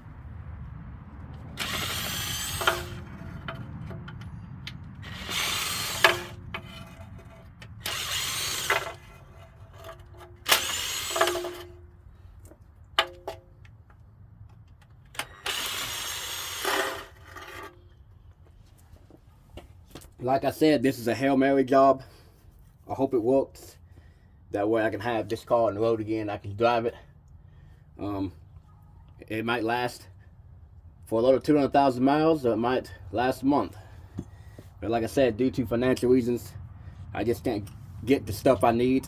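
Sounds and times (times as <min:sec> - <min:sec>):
power tool running in bursts: 0:01.6 - 0:03.2, 0:05.0 - 0:06.4, 0:07.8 - 0:09.3, 0:10.4 - 0:11.8, 0:15.2 - 0:17.6.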